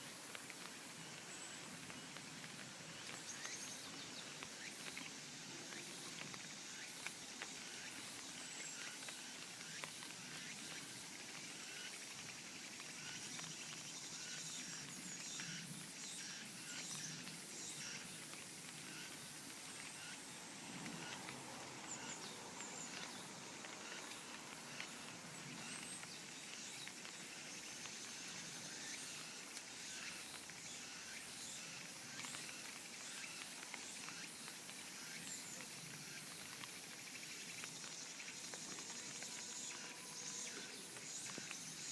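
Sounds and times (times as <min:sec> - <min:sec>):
light rain pattering: 0:00.0 - 0:41.9
insects calling: 0:00.1 - 0:41.9.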